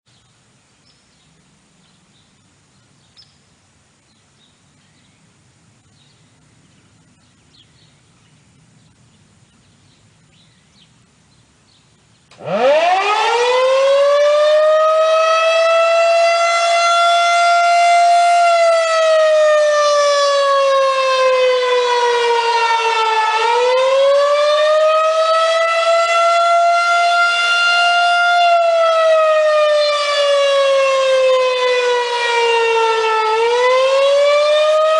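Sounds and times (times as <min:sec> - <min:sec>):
warning siren winding up: 0:12.3 - 0:34.9.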